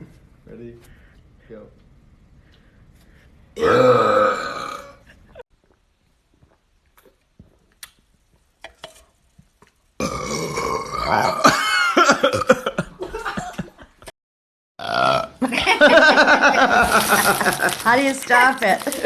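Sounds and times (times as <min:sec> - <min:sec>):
person burping loudly: 0:03.6 - 0:05.1, 0:10.0 - 0:12.8, 0:14.8 - 0:15.4.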